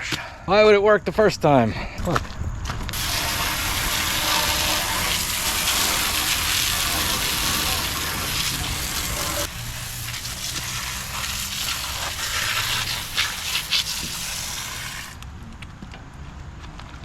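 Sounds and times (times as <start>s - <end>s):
garden hose spraying water: 2.9s - 15.2s.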